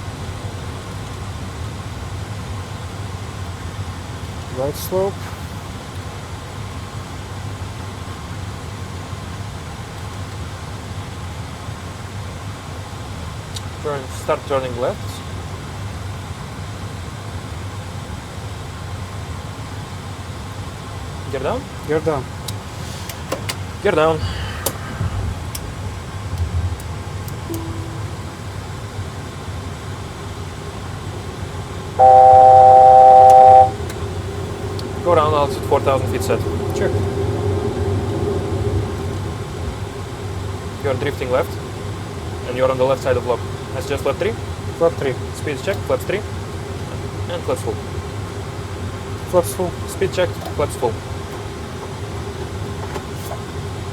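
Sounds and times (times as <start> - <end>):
cockpit background noise: 0.0 - 53.9
low hum: 24.3 - 40.4
faint low tone: 27.5 - 29.5, 32.0 - 33.8
altitude alert chord: 27.5 - 29.6, 32.0 - 33.8.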